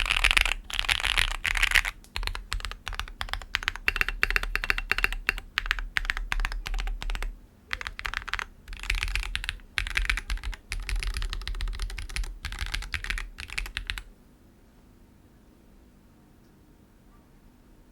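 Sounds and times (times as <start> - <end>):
mechanical keyboard typing: 0.0 - 14.1.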